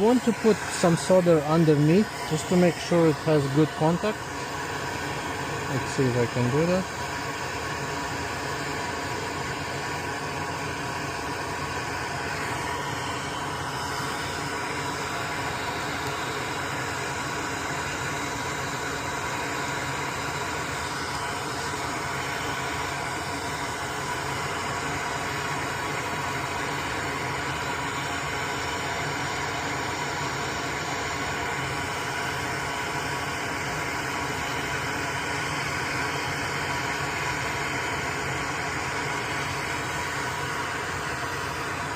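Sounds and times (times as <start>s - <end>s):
fan whirring hum: 0.0s - 41.9s.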